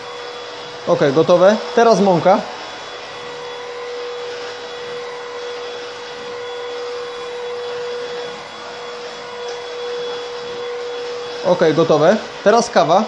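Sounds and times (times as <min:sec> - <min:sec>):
vacuum cleaner motor whine: 0:00.0 - 0:13.0.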